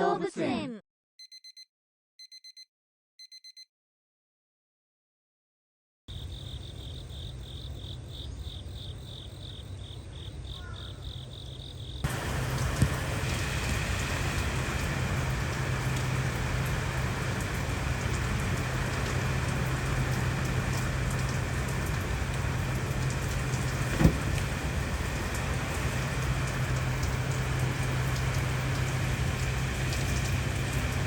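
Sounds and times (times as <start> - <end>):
insect chirping: 6.1 - 12.2
heavy rain hissing: 12.1 - 31.0.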